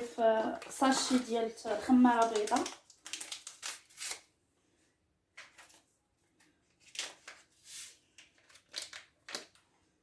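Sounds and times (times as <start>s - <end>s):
paper sachet rustling: 0.7s - 4.3s, 6.6s - 9.6s.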